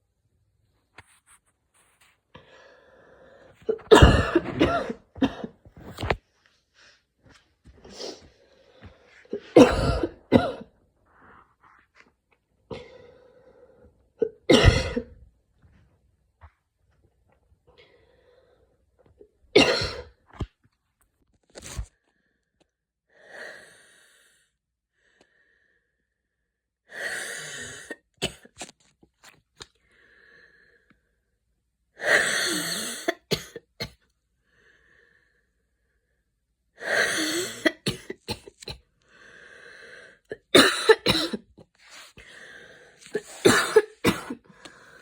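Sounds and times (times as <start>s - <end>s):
woman coughing: 3.7s - 5.6s, 9.4s - 10.7s, 14.2s - 15.2s, 19.6s - 20.1s, 40.5s - 41.5s, 43.1s - 44.4s
wheezy breaths: 39.0s - 40.5s, 41.6s - 43.5s, 44.4s - 45.0s.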